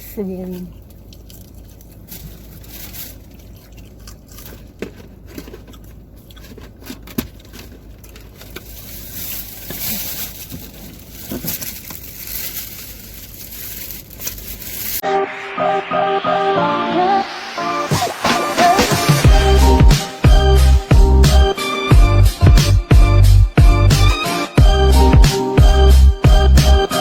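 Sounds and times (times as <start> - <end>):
food packaging crinkling: 0.7 - 15.0.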